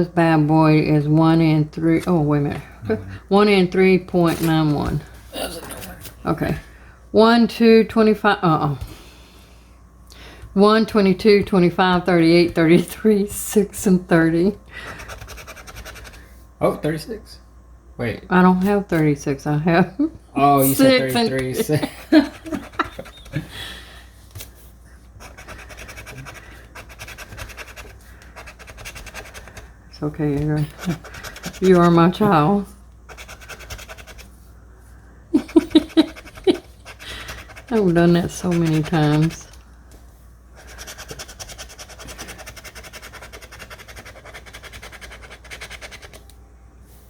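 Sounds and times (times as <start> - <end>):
lottery ticket being scratched: 14.9 - 16.3, 20.6 - 23.4, 25.2 - 34.4, 35.4 - 39.6, 40.6 - 46.2.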